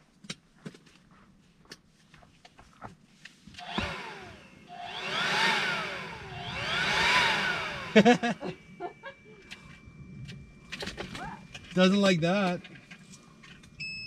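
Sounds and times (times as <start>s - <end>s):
electronic siren-like tone: 3.6s - 12.2s.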